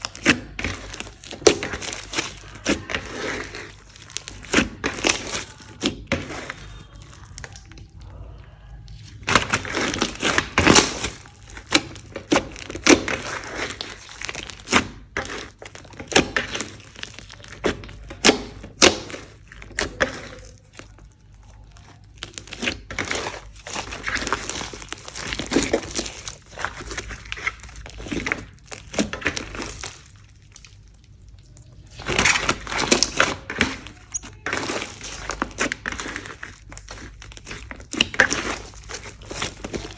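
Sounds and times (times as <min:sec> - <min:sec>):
hands squishing slime: 0:00.0 - 0:39.9.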